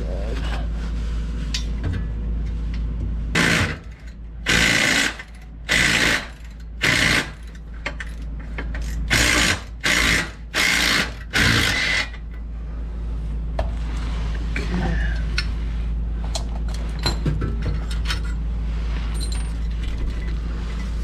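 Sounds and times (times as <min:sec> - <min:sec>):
steady low hum: 0:00.0 - 0:21.0
power wrench bursts: 0:03.4 - 0:07.6, 0:09.1 - 0:12.2.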